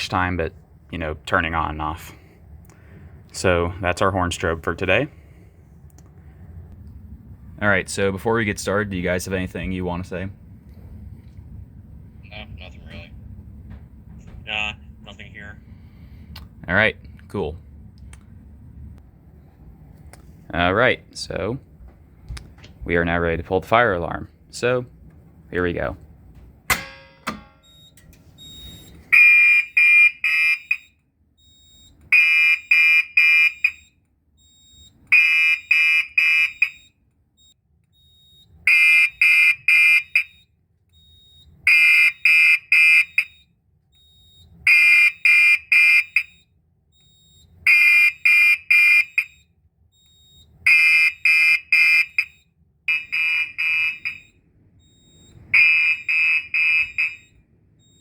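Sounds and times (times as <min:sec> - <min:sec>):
fire alarm horn blasts: 0:27.4 - 0:58.0.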